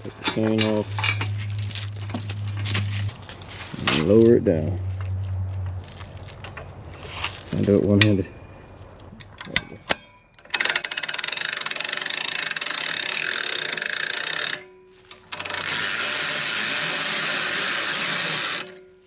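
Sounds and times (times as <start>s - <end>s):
winch ratcheting with rapid clicks: 10.4s - 18.7s.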